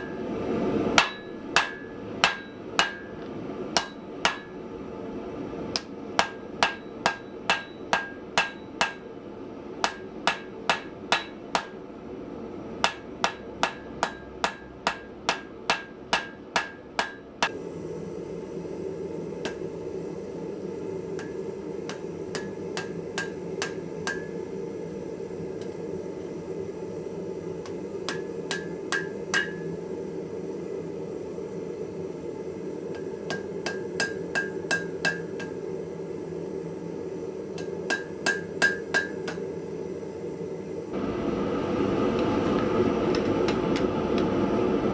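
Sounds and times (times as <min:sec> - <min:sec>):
steady hum: 0:00.0 - 0:44.9
hammer striking steel on anvil: 0:01.0 - 0:04.6, 0:05.8 - 0:09.2, 0:09.8 - 0:11.8, 0:12.8 - 0:17.6, 0:19.4 - 0:19.7, 0:21.2 - 0:24.5, 0:27.6 - 0:29.8, 0:32.9 - 0:35.6, 0:37.6 - 0:39.5.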